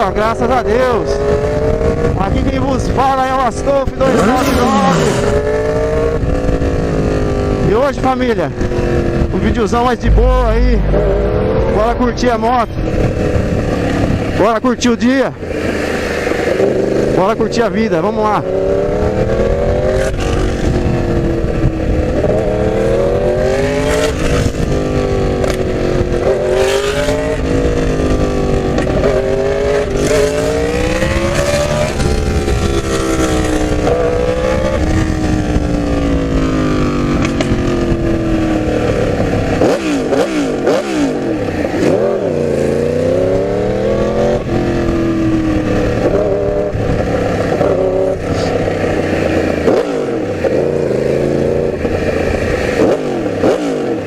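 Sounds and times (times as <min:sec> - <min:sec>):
wind rushing over microphone: 0:08.7 - 0:16.4
motorcycle engine revving: 0:10.0 - 0:14.5, 0:18.4 - 0:54.0.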